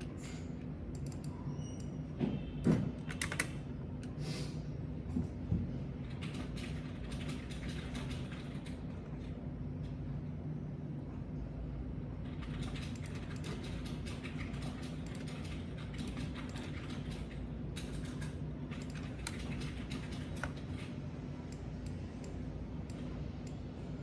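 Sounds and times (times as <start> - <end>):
steady low hum: 0.0 - 24.0
keyboard typing: 0.9 - 1.9, 3.0 - 4.0, 6.0 - 9.4, 12.2 - 23.6.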